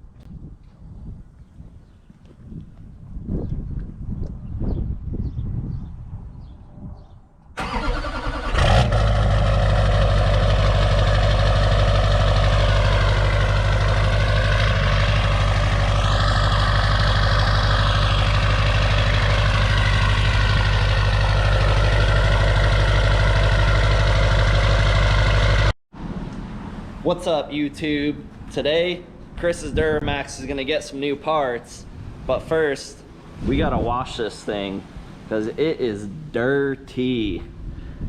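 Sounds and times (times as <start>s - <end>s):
diesel engine cranking: 7.6s - 25.8s
diesel engine idling: 7.6s - 25.8s.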